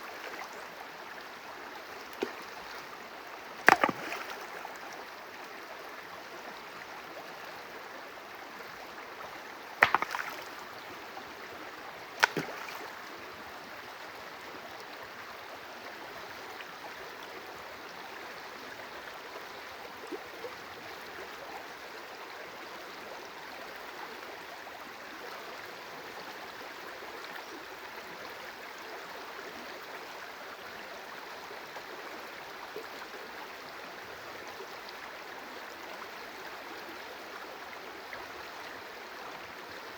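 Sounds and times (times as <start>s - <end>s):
stream water running: 0.0s - 26.7s.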